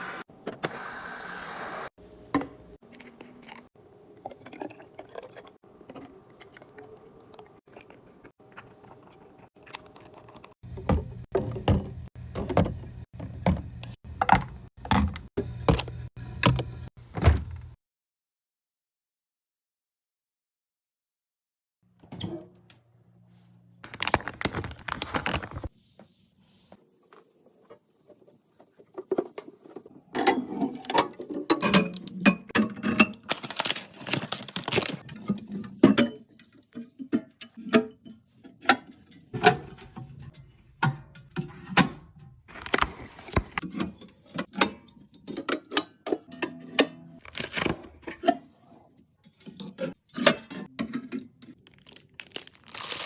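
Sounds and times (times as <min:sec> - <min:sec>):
small items clattering: 0:33.2 - 0:35.5, 0:51.6 - 0:53.0.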